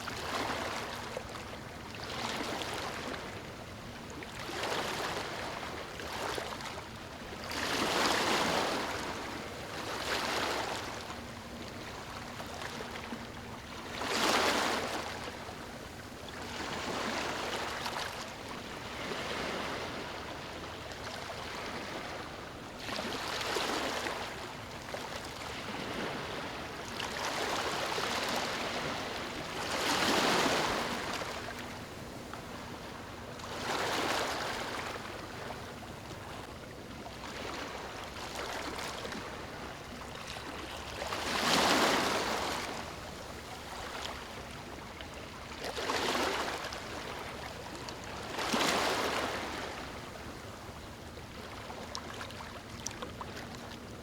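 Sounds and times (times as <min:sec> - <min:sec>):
waves lapping on a beach: 0:00.0 - 0:54.0.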